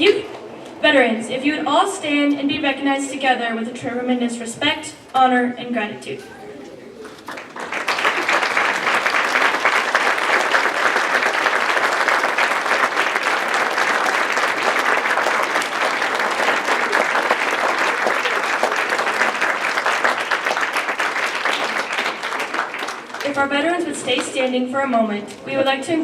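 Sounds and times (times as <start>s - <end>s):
large audience applauding: 7.0s - 23.4s.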